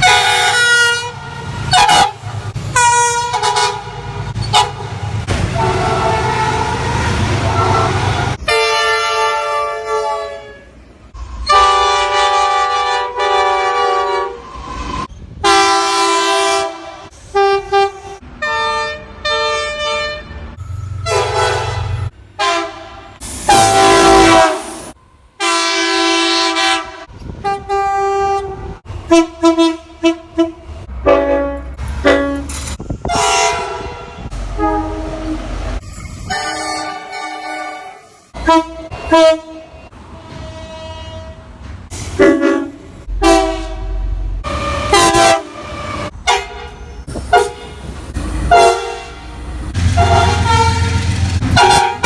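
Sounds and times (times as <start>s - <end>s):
train horn blasts: 0.0s - 10.8s, 11.4s - 14.5s, 15.4s - 47.9s, 48.5s - 52.0s
low engine rumble: 46.1s - 52.0s.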